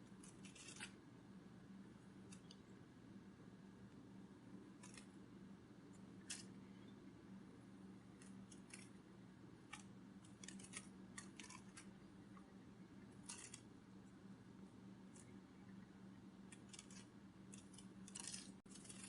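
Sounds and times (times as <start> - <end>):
steady low hum: 0.0 - 19.0
faint irregular clicks and ticks: 2.0 - 2.8, 4.7 - 5.2, 8.1 - 9.0, 9.6 - 14.2, 15.1 - 19.0.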